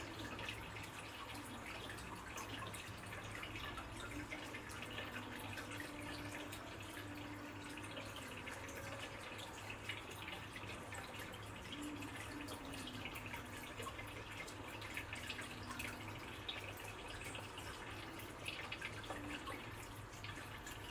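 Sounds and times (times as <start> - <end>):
water dripping and splashing: 0.0 - 20.9.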